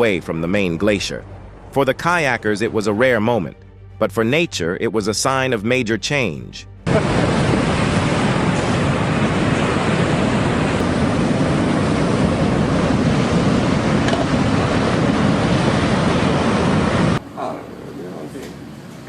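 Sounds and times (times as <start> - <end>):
wind buffeting microphone: 6.9 - 17.2
sea surf: 6.9 - 17.6.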